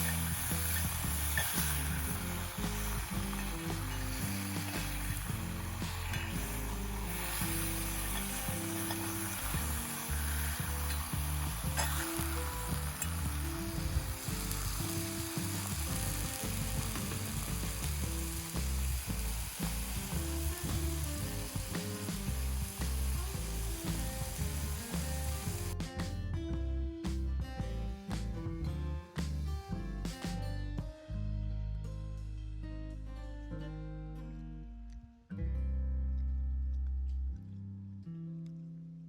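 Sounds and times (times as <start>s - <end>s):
sizzling hiss: 0.0s - 25.8s
background music with bass: 0.0s - 39.0s.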